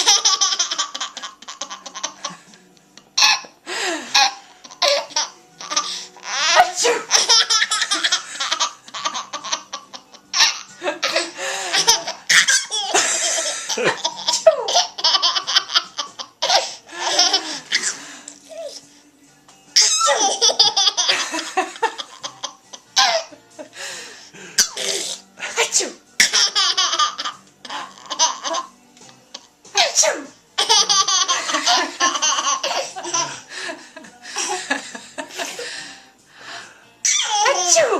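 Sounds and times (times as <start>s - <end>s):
baby laughing hard: 0.0s - 2.5s, 3.2s - 18.0s, 19.8s - 23.4s, 26.2s - 28.7s, 29.8s - 34.8s, 37.1s - 37.9s
adult sneezing: 29.8s - 30.3s.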